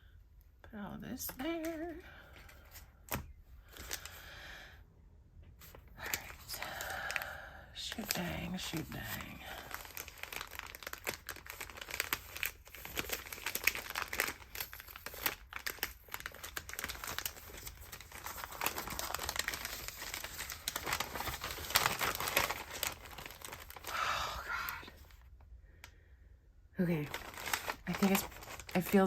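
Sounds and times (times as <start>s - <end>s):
packaging rustling and crackling: 1.3s - 4.2s, 5.6s - 25.2s, 26.8s - 29.0s
packaging tearing: 7.9s - 25.2s, 27.0s - 29.0s.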